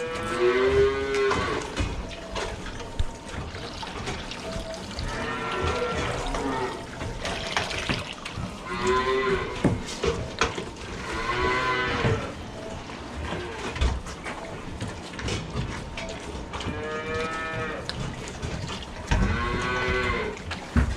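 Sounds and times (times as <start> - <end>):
cattle mooing: 0.0 - 2.3, 5.0 - 7.2, 8.5 - 9.9, 10.9 - 13.8, 16.6 - 17.9, 19.1 - 20.5.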